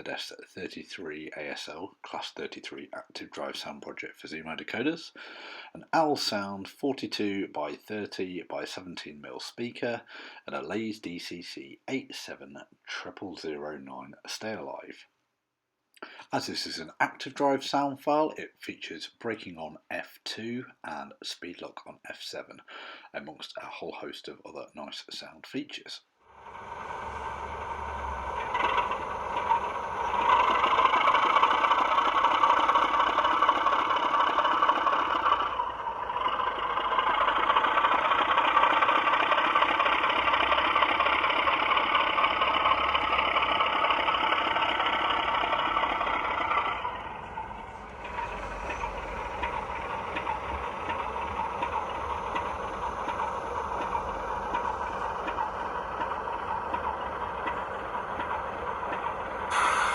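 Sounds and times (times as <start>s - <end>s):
diesel engine sound from small speaker: 0.0s - 12.4s, 26.3s - 59.9s.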